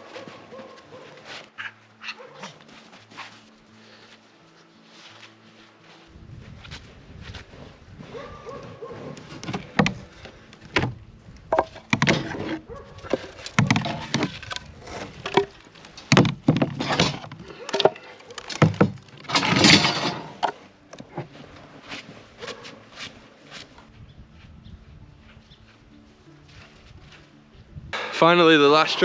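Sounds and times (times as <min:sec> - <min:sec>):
footsteps crunching in snow: 0:00.0 - 0:09.4, 0:21.4 - 0:27.7
firewood pieces clattering: 0:09.1 - 0:21.4.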